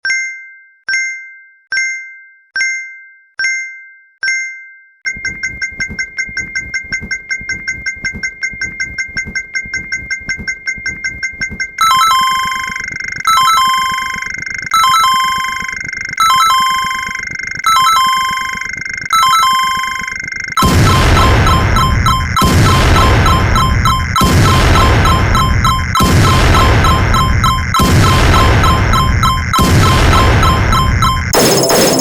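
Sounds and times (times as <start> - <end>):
layered chime: 0.1 - 32.0
short beeping dings: 4.3 - 15.8, 30.4 - 32.0.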